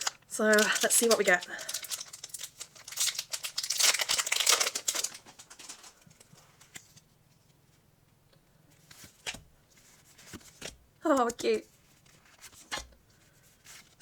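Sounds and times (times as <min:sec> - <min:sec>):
cards and foil wrapper crinkling: 0:00.0 - 0:06.8.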